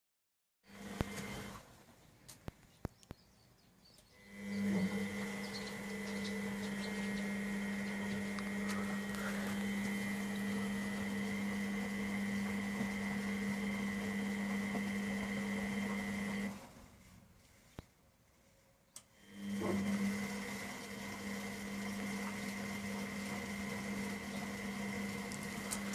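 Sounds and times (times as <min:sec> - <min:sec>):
washing machine hum: 0:00.6 - 0:01.9, 0:04.2 - 0:17.2, 0:19.1 - 0:25.9
high whine: 0:04.2 - 0:14.4.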